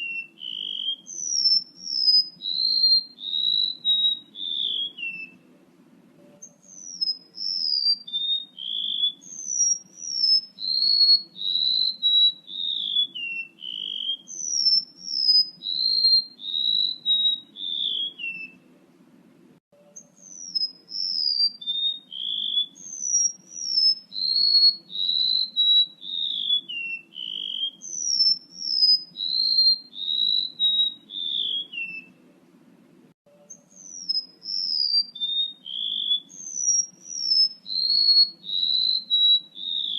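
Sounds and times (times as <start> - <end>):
whistled birdsong: 0.0 - 5.6, 6.2 - 18.8, 19.8 - 32.4, 33.3 - 39.9
faint low hum: 0.0 - 24.3, 27.8 - 34.8.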